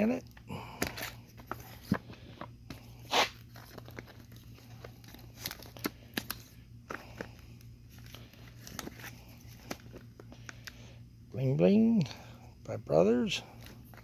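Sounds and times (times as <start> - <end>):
packaging crinkling: 0.8 - 10.8.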